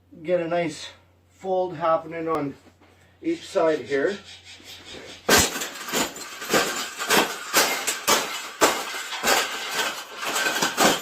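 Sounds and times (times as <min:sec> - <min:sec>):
wire cage clanking: 0:05.2 - 0:11.0.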